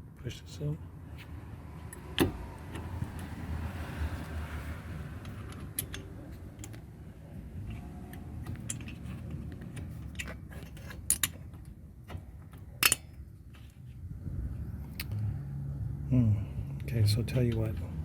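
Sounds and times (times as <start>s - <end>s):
metal tools clicking and clinking: 5.2s - 6.8s, 8.1s - 11.8s, 12.6s - 13.2s
sharp metal clanks: 12.7s - 13.2s.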